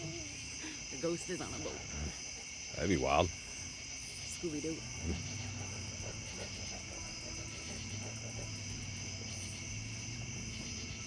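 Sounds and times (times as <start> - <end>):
crickets chirping: 0.0 - 11.0
distant motorcycle engine drone: 4.8 - 11.0.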